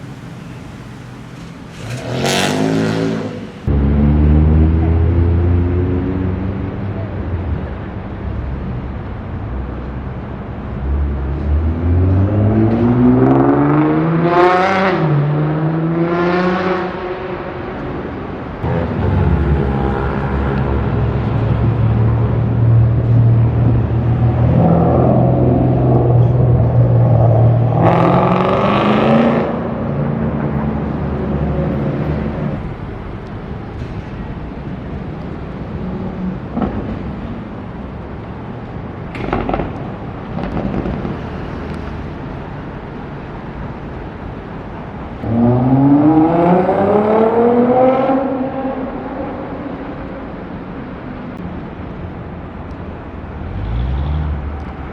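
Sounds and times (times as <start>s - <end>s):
car accelerating hard: 0.0s - 6.9s, 10.9s - 17.5s, 18.6s - 32.7s, 45.2s - 50.7s
sports car engine revving: 0.0s - 6.9s, 18.6s - 32.7s
street noise: 0.0s - 54.9s.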